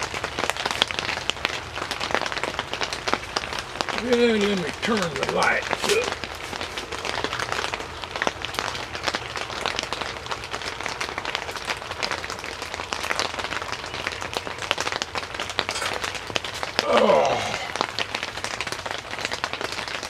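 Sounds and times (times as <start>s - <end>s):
rain pattering on tent fabric: 0.0s - 20.0s.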